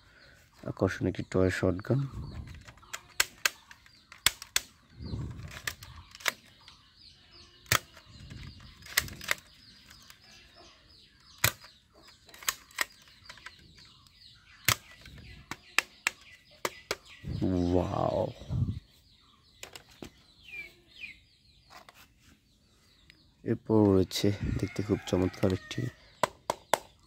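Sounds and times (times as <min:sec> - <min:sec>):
birds chirping: 0:00.0 - 0:27.0
toy gun clicking: 0:02.9 - 0:04.8.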